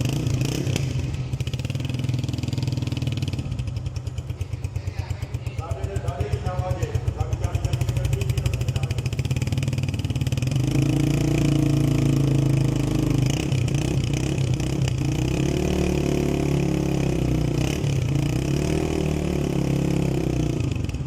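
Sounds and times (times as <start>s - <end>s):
motorcycle engine revving: 0.0s - 21.0s.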